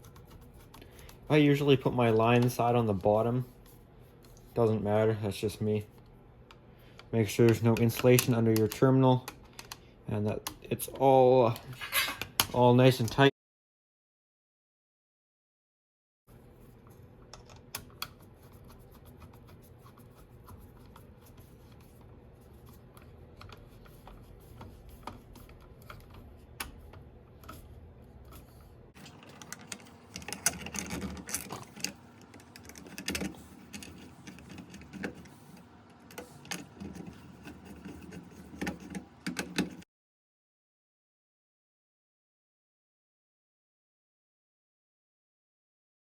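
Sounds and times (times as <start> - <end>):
low background hum: 0.0 - 13.3, 16.3 - 39.8.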